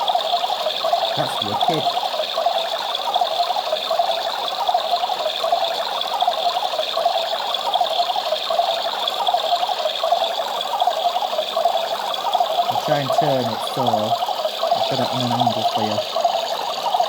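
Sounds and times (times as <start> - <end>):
toy washing machine motor whirring: 0.0 - 17.0
water churning: 0.8 - 2.2, 11.7 - 17.0.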